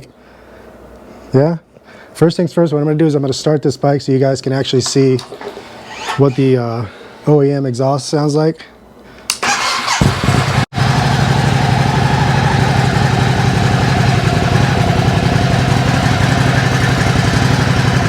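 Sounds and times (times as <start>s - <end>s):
motorcycle engine idling: 9.6s - 18.0s.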